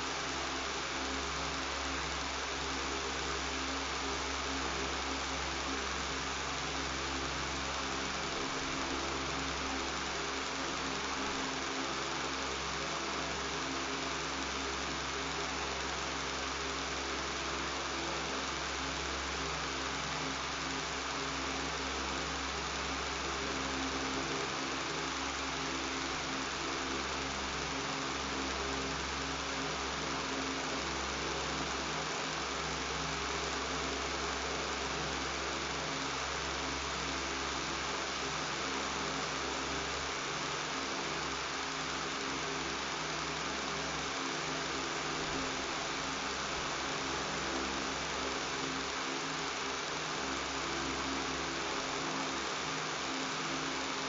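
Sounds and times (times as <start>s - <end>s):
electric fan running: 0.0s - 54.0s.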